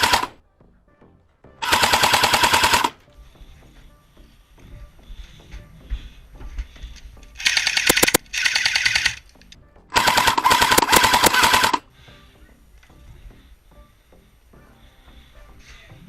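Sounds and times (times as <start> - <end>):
airsoft gun full-auto bursts: 0.0 - 0.4, 1.6 - 3.0, 7.4 - 9.3, 10.0 - 11.8.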